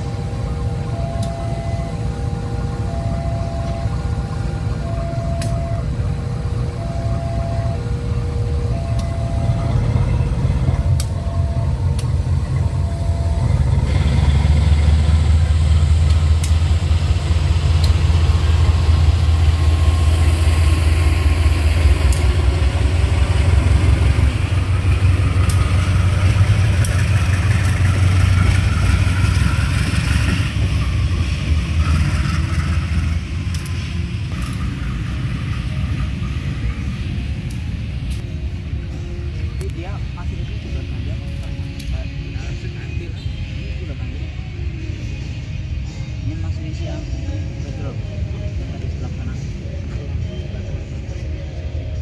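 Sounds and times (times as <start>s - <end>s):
alternating two-note signal: 0.0s - 14.3s
locomotive engine humming: 0.0s - 52.0s.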